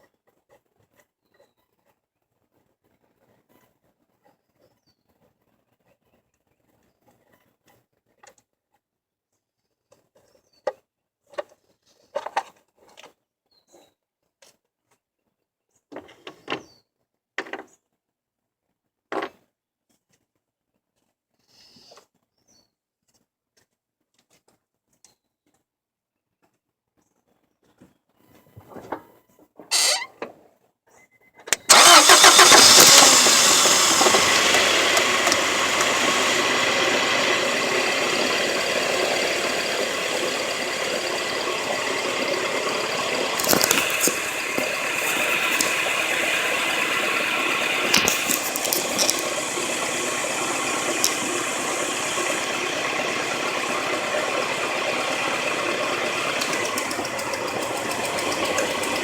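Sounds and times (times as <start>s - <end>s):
sharp clicks: 31.6s - 59.0s
car engine starting and running: 31.7s - 59.0s.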